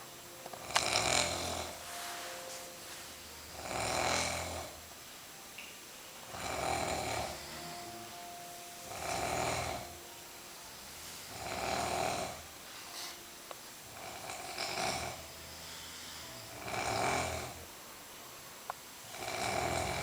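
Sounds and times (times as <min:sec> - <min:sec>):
person snoring: 0:00.6 - 0:01.8, 0:03.5 - 0:04.8, 0:06.3 - 0:08.1, 0:08.9 - 0:10.0, 0:11.3 - 0:13.2, 0:13.9 - 0:17.6, 0:19.1 - 0:20.0.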